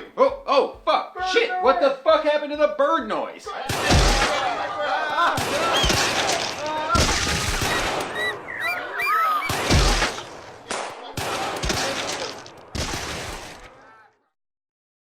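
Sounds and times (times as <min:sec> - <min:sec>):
loud gunshots with ringing: 0:03.6 - 0:04.6, 0:05.3 - 0:13.7
short chirping glides: 0:07.5 - 0:09.7.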